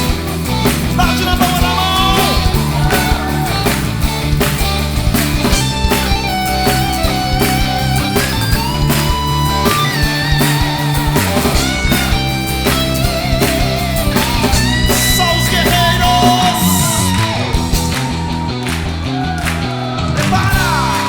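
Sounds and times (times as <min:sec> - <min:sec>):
rock band playing: 0:00.0 - 0:21.0
electric guitar melody with vibrato: 0:02.6 - 0:18.8.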